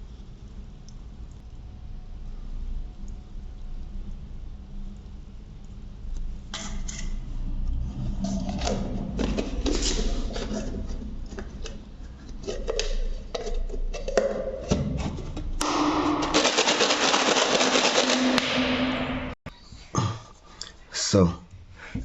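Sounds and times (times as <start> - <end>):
low steady rumble: 0.0 - 16.4.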